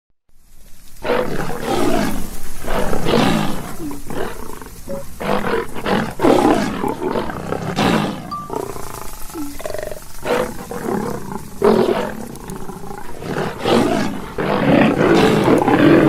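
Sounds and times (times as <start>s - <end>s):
lion roaring: 0.9s - 16.0s.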